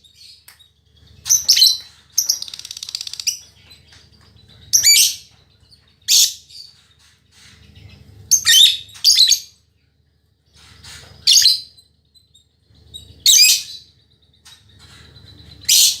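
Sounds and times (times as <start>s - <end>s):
lovebird shrill chattering: 1.2s - 3.5s.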